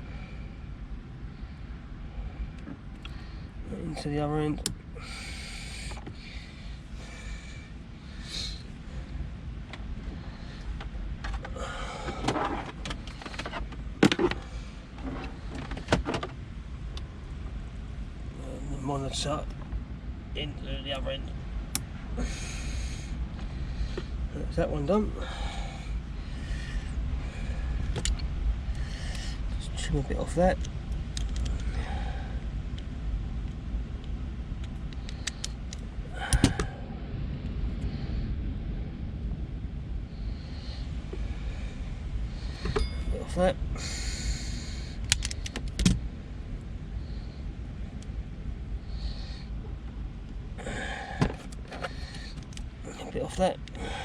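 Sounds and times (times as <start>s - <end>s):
steady low rumble: 0.0s - 54.0s
small clicks of wire connectors: 27.9s - 28.3s, 30.6s - 31.7s, 32.8s - 36.6s, 45.0s - 46.0s.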